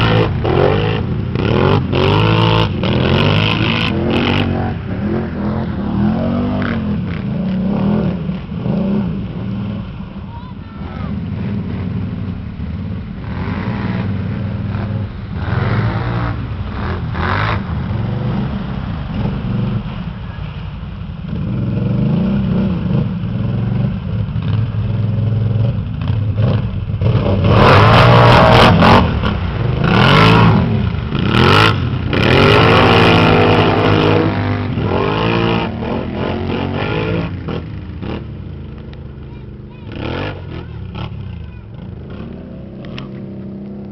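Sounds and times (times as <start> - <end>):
quad engines revving: 0.0 - 12.4, 13.2 - 20.0, 21.3 - 43.9.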